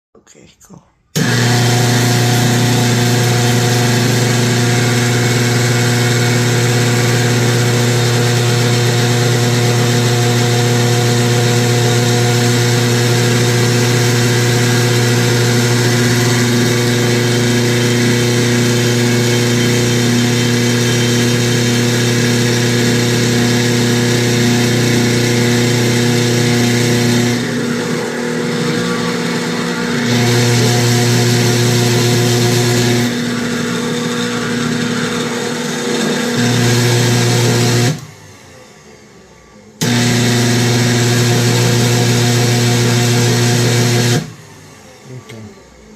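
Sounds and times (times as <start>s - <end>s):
stand mixer motor humming: 1.2s - 38.8s, 39.8s - 45.1s
mixer grinding: 1.2s - 45.9s.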